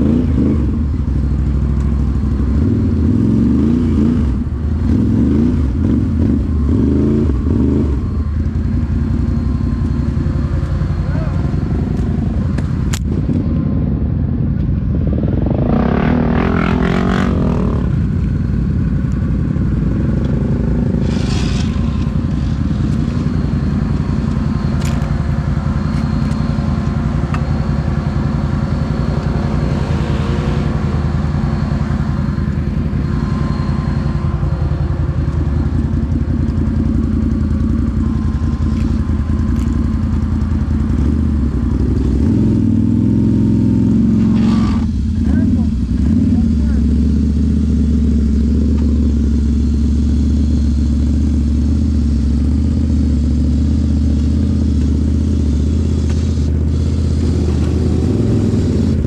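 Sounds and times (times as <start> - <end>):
off-road vehicle engine running: 0.0 - 59.0
clattering and scraping over ground: 21.0 - 23.3.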